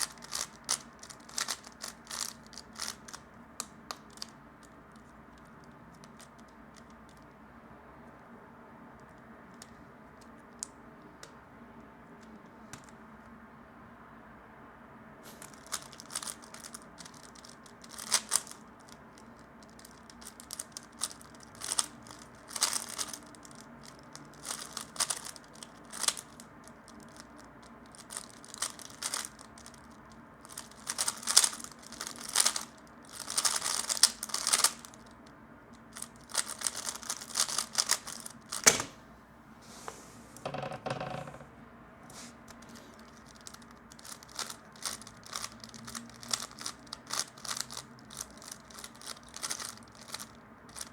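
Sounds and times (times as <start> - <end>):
puzzle cube plastic clicking: 0.0 - 7.2, 17.8 - 18.6, 19.6 - 23.4, 28.0 - 29.9, 30.5 - 35.0, 36.0 - 39.0, 42.5 - 50.9.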